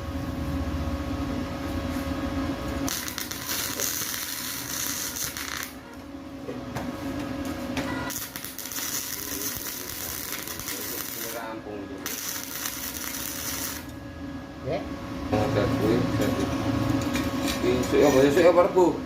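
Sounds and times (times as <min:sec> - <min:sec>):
welding arc crackling: 0:02.8 - 0:06.0, 0:08.1 - 0:14.0.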